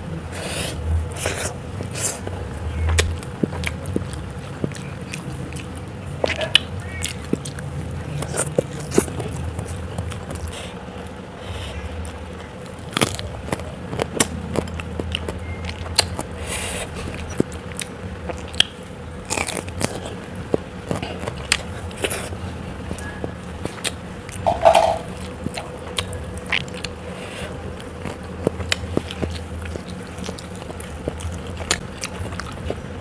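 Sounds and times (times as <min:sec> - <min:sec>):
person chewing crunchy food: 0:00.0 - 0:33.0.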